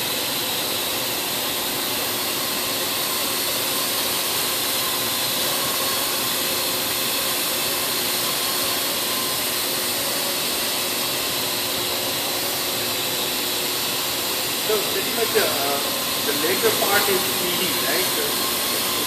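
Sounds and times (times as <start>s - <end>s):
drone motors humming: 14.4s - 19.0s
propeller rushing hiss: 14.6s - 19.0s.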